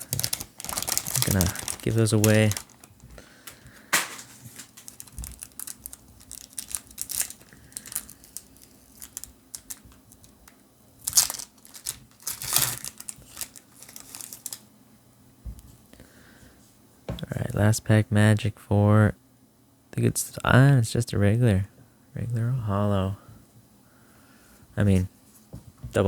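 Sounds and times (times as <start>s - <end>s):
foil wrapper ripping: 0.0s - 10.4s, 11.0s - 14.6s
foil wrapper crinkling: 0.0s - 14.6s.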